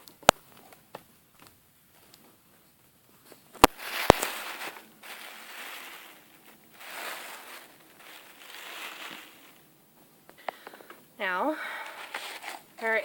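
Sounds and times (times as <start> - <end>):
packaging rustling and scraping: 3.3 - 9.7, 11.8 - 13.0.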